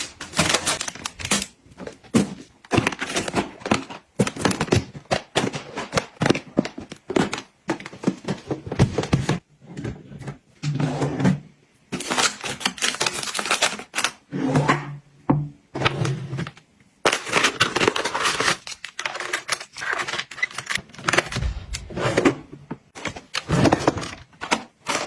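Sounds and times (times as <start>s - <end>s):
low hum or rattle: 21.1s - 22.7s.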